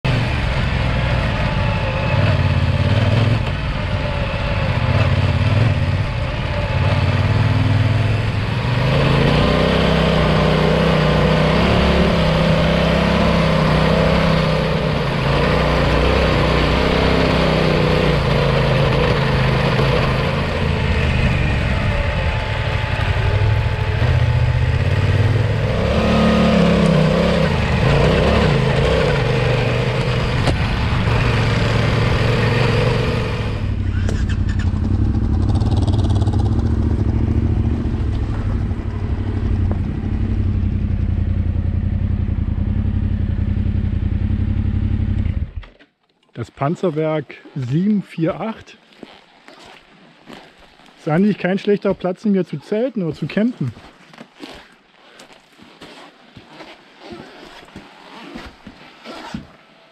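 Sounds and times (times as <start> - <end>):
motorcycle engine running: 0.0 - 45.7.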